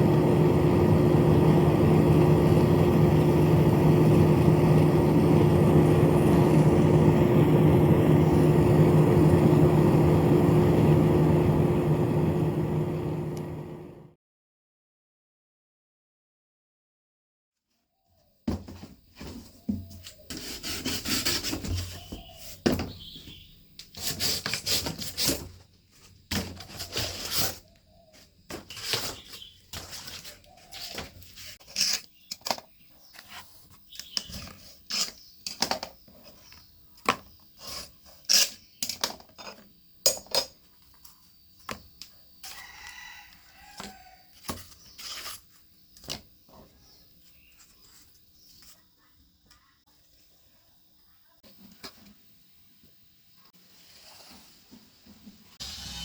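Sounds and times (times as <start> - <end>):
scraping and rubbing on cardboard: 19.3 - 22.6, 24.0 - 27.7, 28.5 - 31.9, 43.6 - 45.7.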